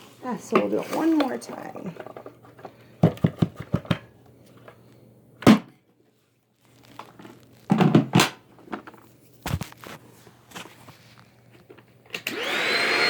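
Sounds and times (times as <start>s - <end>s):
crunching crinkling: 6.5s - 7.8s, 8.5s - 11.8s.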